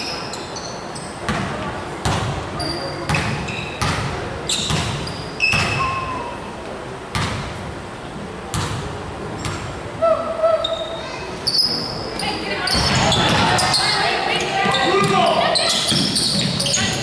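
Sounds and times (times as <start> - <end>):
sneakers squeaking on court: 0.0 - 6.3, 9.4 - 9.8, 10.6 - 17.0
basketball bouncing on gym floor: 1.2 - 2.4, 3.1 - 5.9, 7.1 - 7.5, 8.5 - 9.7.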